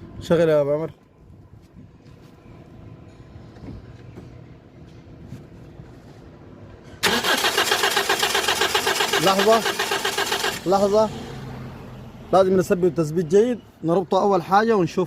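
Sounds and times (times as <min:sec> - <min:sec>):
starter turning engine over: 0:07.0 - 0:10.8.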